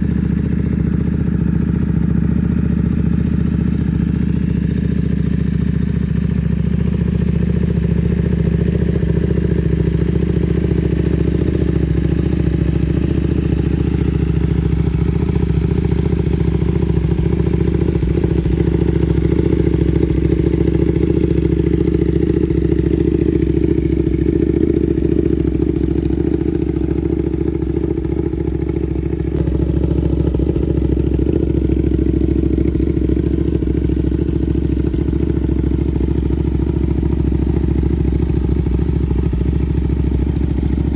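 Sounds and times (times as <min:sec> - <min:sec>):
motorcycle engine idling: 0:00.0 - 0:40.9.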